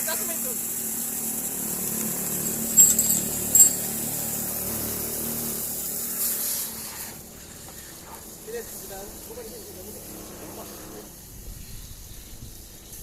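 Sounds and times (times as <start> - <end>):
mechanical hum with hiss: 3.8 - 13.0.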